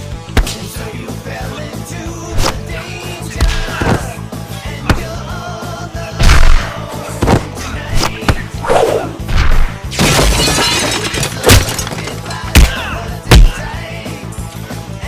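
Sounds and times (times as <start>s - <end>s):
action music: 0.0s - 15.0s
sharp fight hits and impacts: 0.3s - 0.7s, 6.2s - 8.5s, 9.2s - 13.6s
shattering crash: 9.9s - 13.5s.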